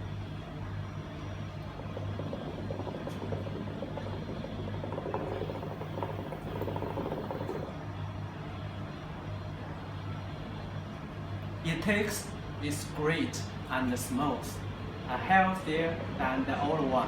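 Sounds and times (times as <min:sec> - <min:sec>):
hookah water bubbling: 0:01.0 - 0:07.8, 0:14.4 - 0:16.9
low hum: 0:01.0 - 0:07.8.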